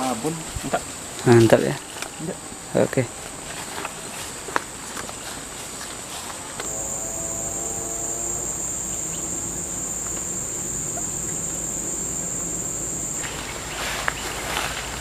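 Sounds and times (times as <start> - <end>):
insects buzzing: 6.6 - 15.0.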